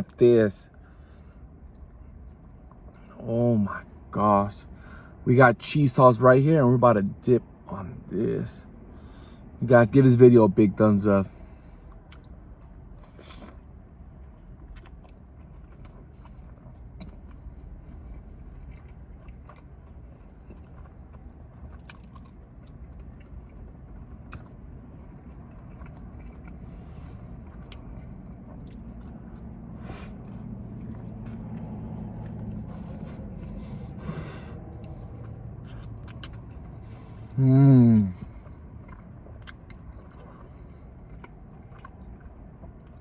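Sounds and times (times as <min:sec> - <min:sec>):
low steady hum: 0:00.0 - 0:43.0
person chewing food: 0:11.4 - 0:43.0.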